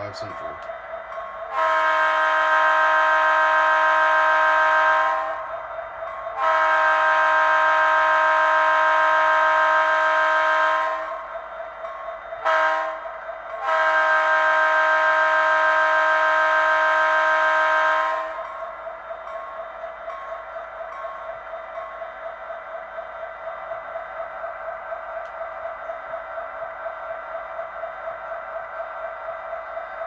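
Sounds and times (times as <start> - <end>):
train horn blasts: 1.5 - 5.6, 6.4 - 11.3, 12.4 - 18.5.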